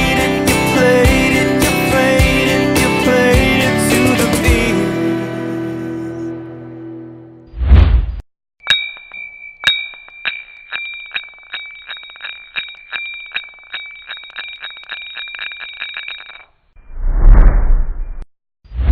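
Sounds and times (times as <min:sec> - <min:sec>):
bell-like metallic ringing: 0:08.6 - 0:16.6
whoosh: 0:16.8 - 0:18.9.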